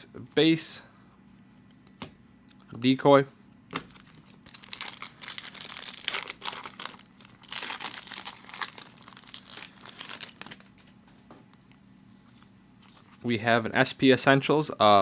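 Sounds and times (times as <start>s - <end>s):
foil wrapper crinkling and tearing: 3.9s - 11.0s.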